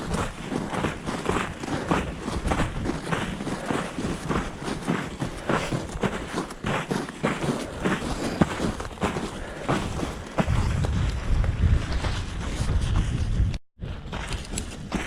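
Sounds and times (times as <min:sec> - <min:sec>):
footsteps on trail: 0:00.0 - 0:15.0.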